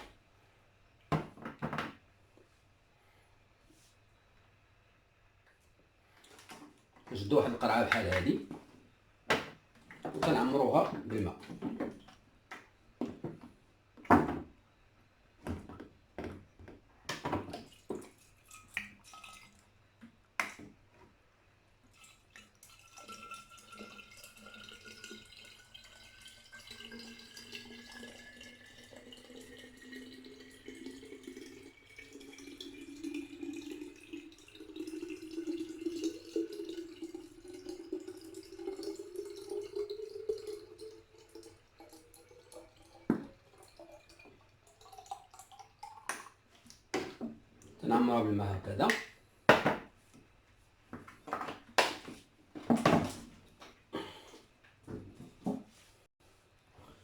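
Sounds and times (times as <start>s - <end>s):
bottle filling with water: 7.1s - 8.5s, 17.4s - 19.6s, 21.9s - 47.3s
bottle handling knocks and clicks: 48.9s - 49.9s.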